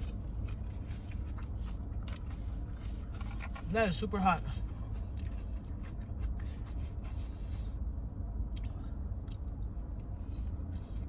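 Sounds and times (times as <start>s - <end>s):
person chewing food: 0.0s - 3.6s, 4.6s - 7.8s.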